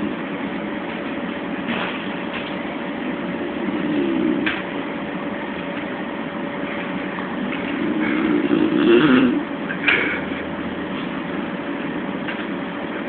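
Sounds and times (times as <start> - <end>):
steady hum: 0.0 - 13.0
person snoring: 3.5 - 4.5, 7.8 - 9.5.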